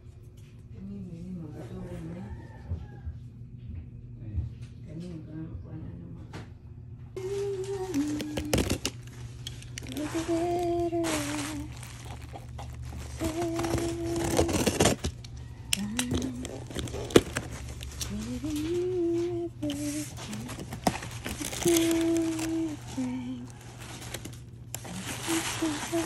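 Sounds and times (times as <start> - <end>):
person humming: 7.2 - 9.0, 9.8 - 15.1, 15.8 - 23.6, 24.8 - 26.0
plastic packaging crinkling: 7.2 - 26.0.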